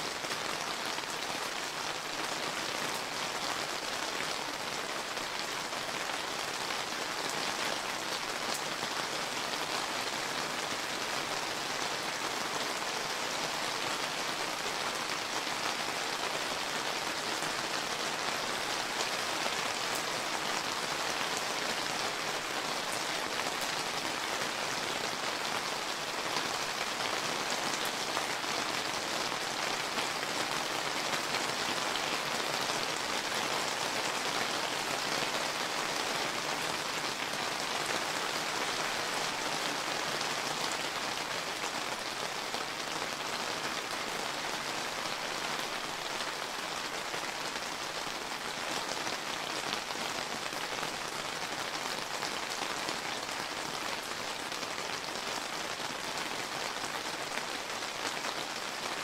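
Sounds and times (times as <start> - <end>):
rain pattering: 0.0 - 59.0.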